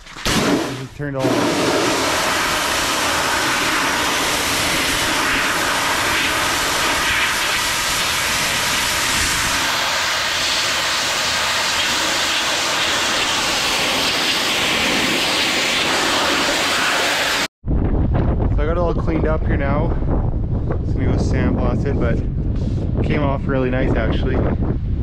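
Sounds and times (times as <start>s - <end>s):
pressure washer spraying metal: 0.3s - 17.5s.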